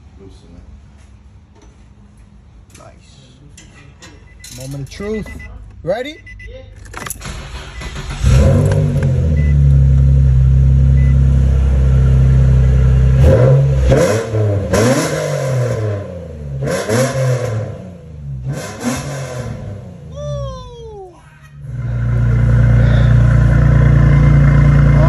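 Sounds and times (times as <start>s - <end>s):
car engine idling and revving: 6.8s - 20.5s, 21.6s - 25.0s.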